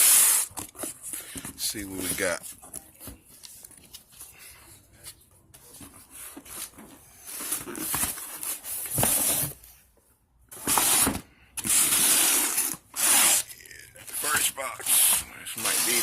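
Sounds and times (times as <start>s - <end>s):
packaging rustling and tearing: 10.7s - 16.0s.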